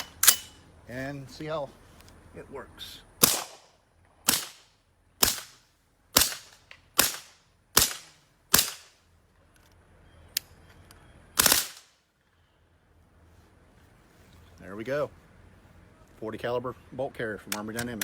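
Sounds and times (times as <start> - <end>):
suppressed rifle shots: 3.2 - 5.6, 6.2 - 9.0, 11.4 - 11.9.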